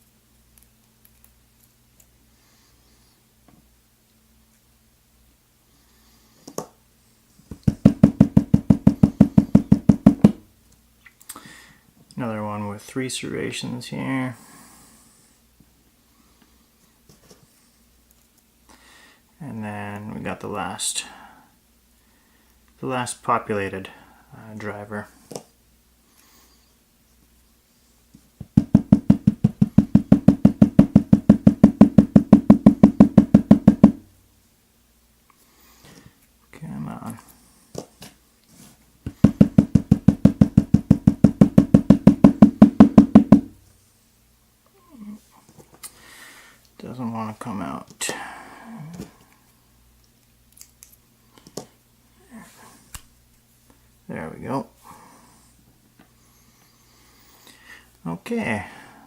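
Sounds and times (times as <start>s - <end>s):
lock cylinder knocking on hard surface: 7.6s - 10.4s, 28.4s - 34.0s, 39.1s - 43.5s.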